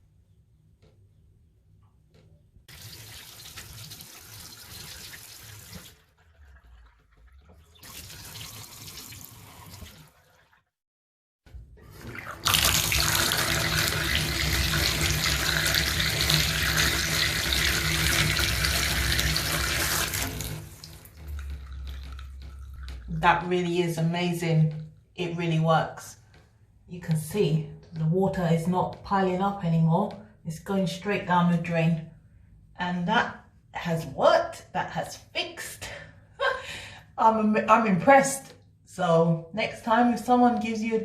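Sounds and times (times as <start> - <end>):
tap water gushing down drain: 2.7 - 10.8, 11.8 - 23.6.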